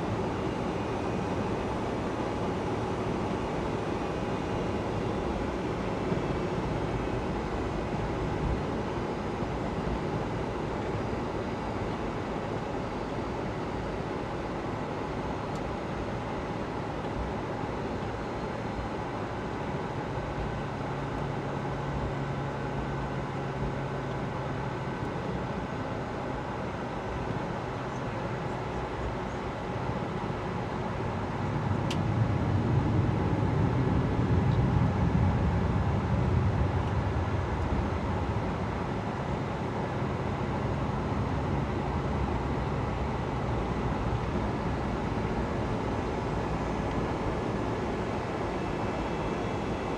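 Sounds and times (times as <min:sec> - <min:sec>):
aircraft cabin engine rumble and hiss: 0:00.0 - 0:49.9.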